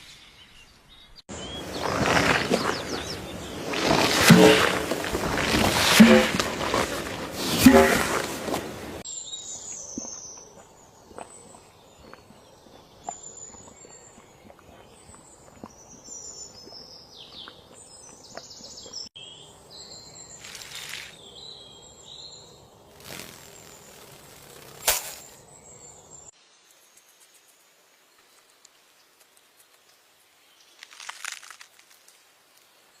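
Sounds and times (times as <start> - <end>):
small birds chirping: 0.0 - 4.3, 9.2 - 31.2.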